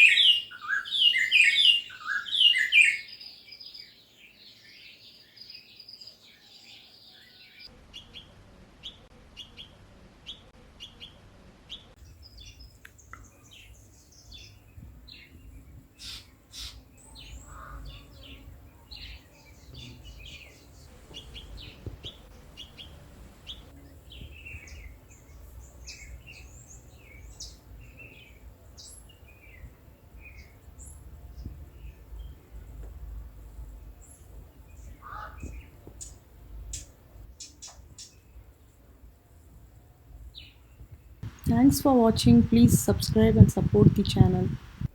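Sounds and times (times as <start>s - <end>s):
birds chirping and twittering: 0.0s - 38.8s, 40.1s - 44.6s
low background rumble: 16.9s - 37.4s, 38.3s - 44.9s.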